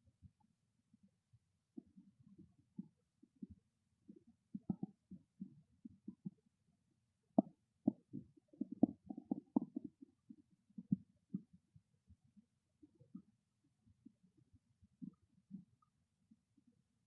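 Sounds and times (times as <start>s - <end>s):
stomach growling: 1.8s - 6.5s, 7.4s - 11.6s.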